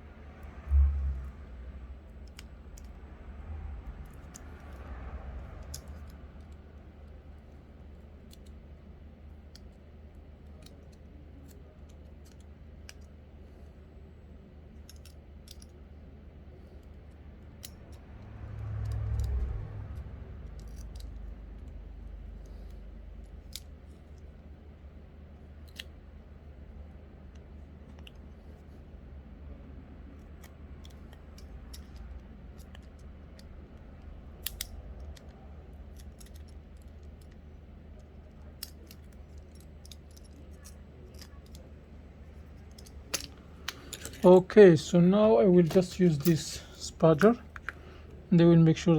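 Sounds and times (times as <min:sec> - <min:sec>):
steady low rumble: 0:00.0 - 0:10.6, 0:13.4 - 0:48.9
clicks of small repair tools: 0:42.6 - 0:44.4, 0:45.6 - 0:48.0.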